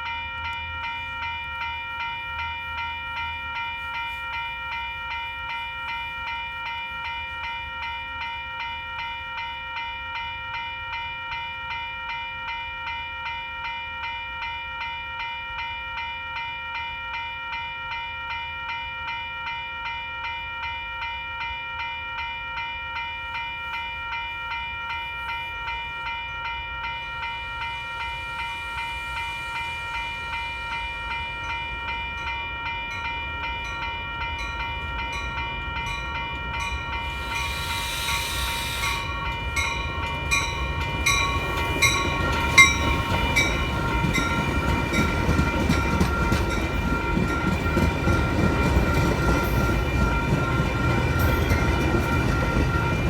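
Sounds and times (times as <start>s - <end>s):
railroad crossing bell ringing: 0.0s - 53.0s
train rumble: 25.1s - 53.0s.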